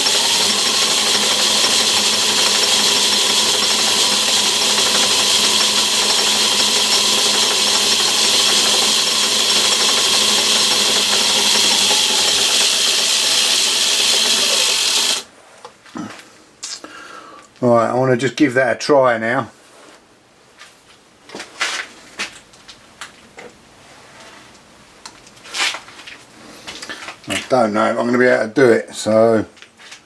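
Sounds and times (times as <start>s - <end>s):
lathe motor whirring: 0.0s - 15.3s.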